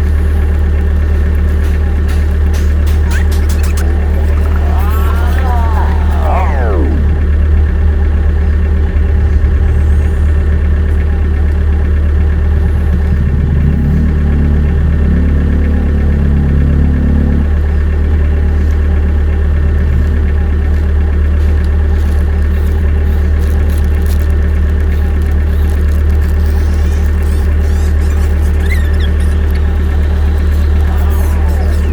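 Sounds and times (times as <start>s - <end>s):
engine running with low hum: 0.0s - 31.9s
stepped higher tones: 1.2s - 7.4s.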